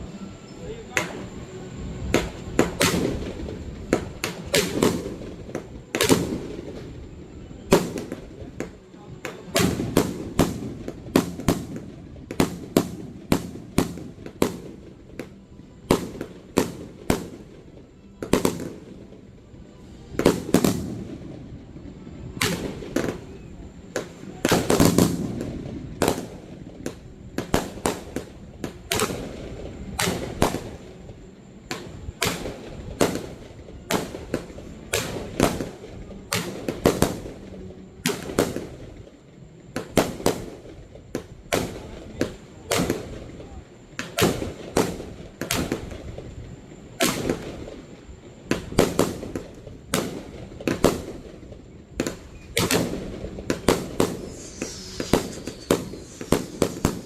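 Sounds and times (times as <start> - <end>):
firework shell bursts: 52.0 - 57.0
falling firework whistle: 52.1 - 57.0.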